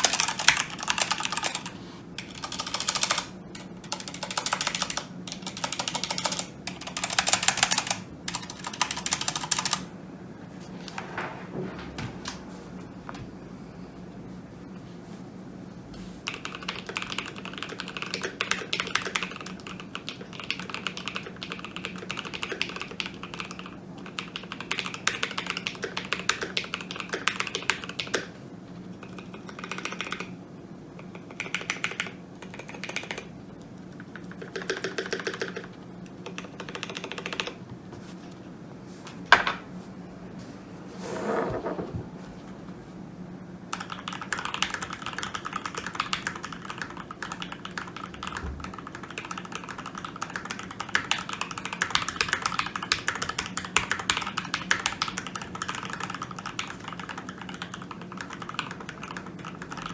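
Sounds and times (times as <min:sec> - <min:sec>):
typing on computer keyboard: 0:00.0 - 0:09.9, 0:16.2 - 0:28.3, 0:29.0 - 0:30.4, 0:31.0 - 0:37.6, 0:43.7 - 0:59.9
steady low hum: 0:00.0 - 0:20.4, 0:32.0 - 0:59.9.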